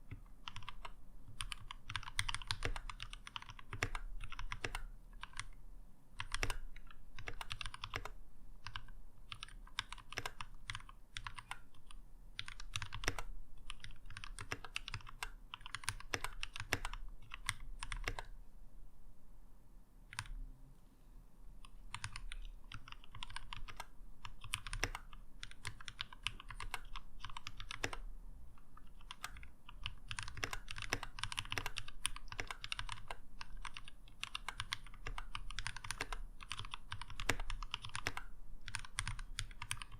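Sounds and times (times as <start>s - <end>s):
mechanical keyboard typing: 0.1s - 5.6s, 6.2s - 18.4s, 20.1s - 20.4s, 21.6s - 28.1s, 28.7s - 39.9s.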